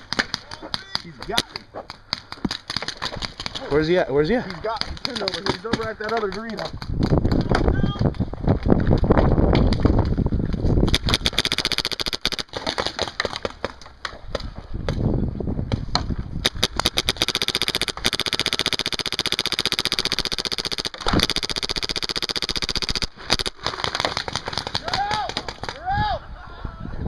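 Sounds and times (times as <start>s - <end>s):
paintball marker rapid pops: 0.0s - 3.8s, 4.6s - 8.2s, 8.9s - 10.2s, 10.8s - 15.0s, 15.9s - 25.8s.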